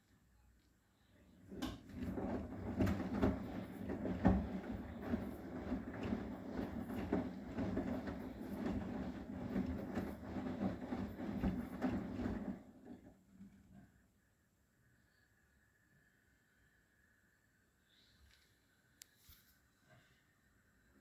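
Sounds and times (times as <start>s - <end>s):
washing machine motor hum: 1.2s - 14.1s
laundry knocking in drum: 2.0s - 12.6s.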